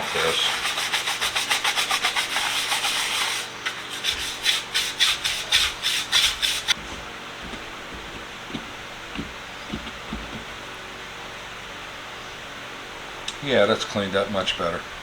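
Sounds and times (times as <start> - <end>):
scrubbing a metal case: 0.0 - 10.6.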